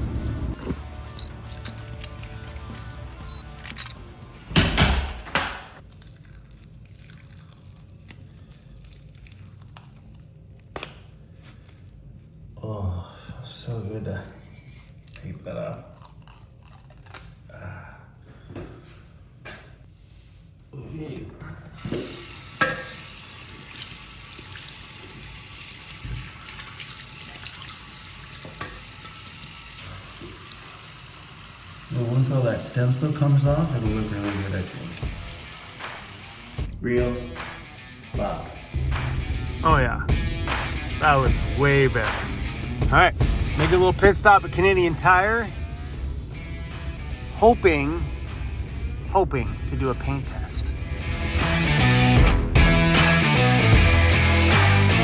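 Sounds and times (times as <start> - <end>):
bandage peeling off skin: 5.8 - 12.4, 14.7 - 17.4
water running from a tap: 21.8 - 36.7.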